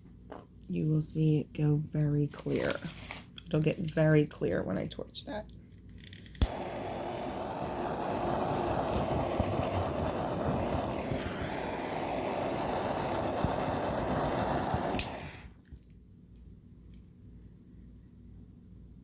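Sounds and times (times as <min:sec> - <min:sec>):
torch flame hissing: 0:06.1 - 0:15.6
torch shut off click: 0:06.3 - 0:15.6.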